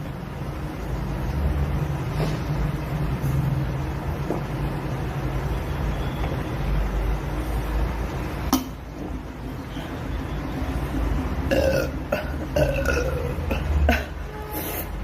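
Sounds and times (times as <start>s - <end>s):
woman burping: 11.5s - 14.2s.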